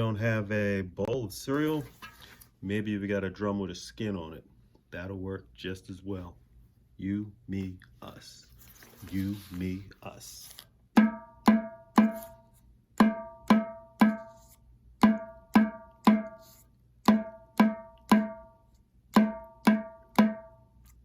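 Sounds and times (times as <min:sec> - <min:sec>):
ceramic percussion strikes: 0:11.0 - 0:12.4, 0:13.0 - 0:20.7.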